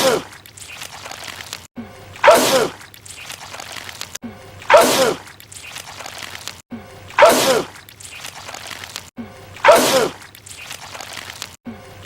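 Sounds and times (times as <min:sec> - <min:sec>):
man sneezing loudly: 0:07.2 - 0:07.7, 0:09.6 - 0:10.2.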